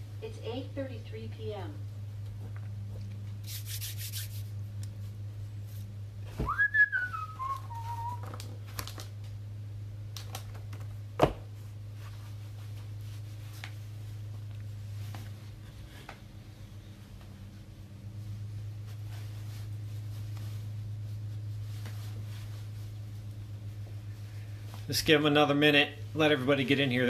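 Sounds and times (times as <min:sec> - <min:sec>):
steady low hum: 0:00.0 - 0:27.0
person whistling: 0:06.4 - 0:08.2.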